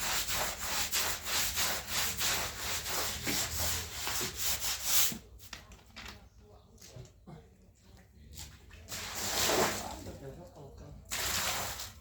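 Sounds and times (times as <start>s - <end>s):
broom scrubbing hard floor: 0.0s - 5.2s, 8.9s - 10.0s.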